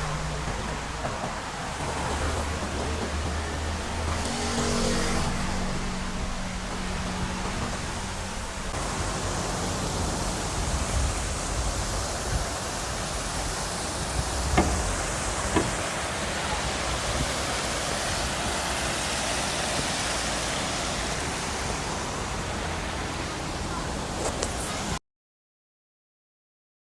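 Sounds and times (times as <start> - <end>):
steady rushing noise: 0.0 - 16.6.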